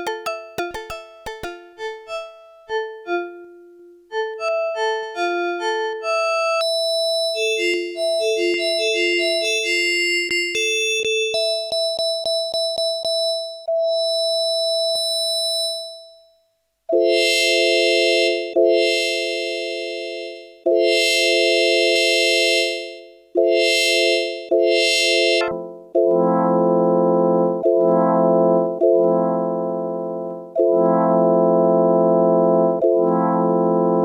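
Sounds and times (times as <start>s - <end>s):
ticking rhythm: 0.0s - 3.0s
bright keyboard chord: 0.0s - 6.5s, 23.4s - 34.0s
electronic keyboard notes: 0.0s - 15.7s, 16.9s - 34.0s.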